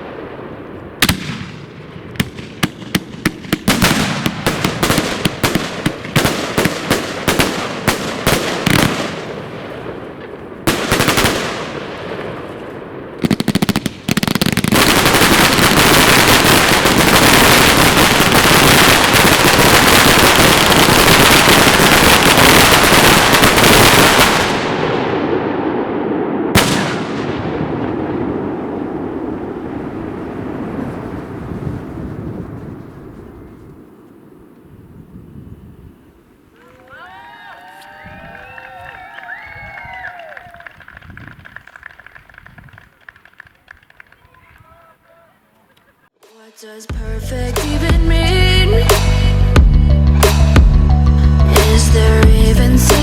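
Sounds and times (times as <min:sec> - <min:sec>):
fireworks sharp bangs: 0:00.0 - 0:36.0
fireworks heavy blasts: 0:00.0 - 0:36.5
fireworks crackling: 0:00.0 - 0:46.0.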